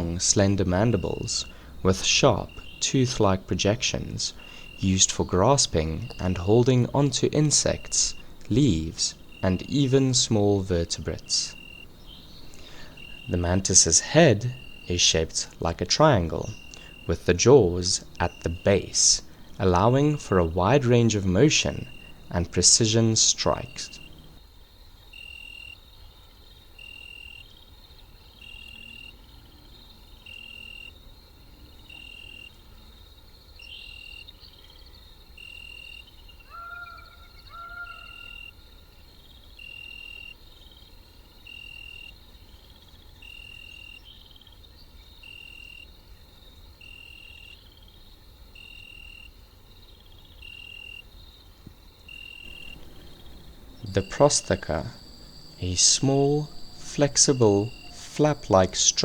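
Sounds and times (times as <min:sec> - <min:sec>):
low animal calls: 0:00.0 - 0:24.4, 0:36.5 - 0:38.4, 0:52.2 - 0:59.0
insect chirping: 0:00.0 - 0:59.0.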